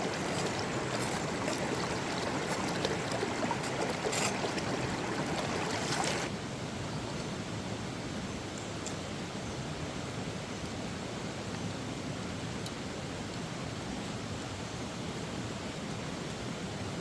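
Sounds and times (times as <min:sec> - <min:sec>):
stream water rushing: 0:00.0 - 0:06.4.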